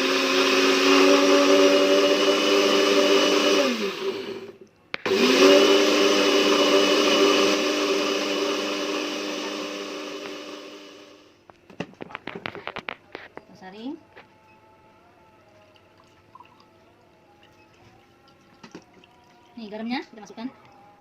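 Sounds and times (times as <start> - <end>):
blender running: 0.0 - 11.3.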